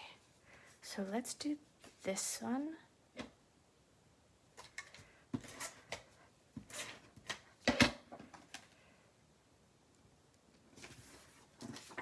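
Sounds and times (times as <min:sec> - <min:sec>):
paper rustling: 0:10.7 - 0:12.0.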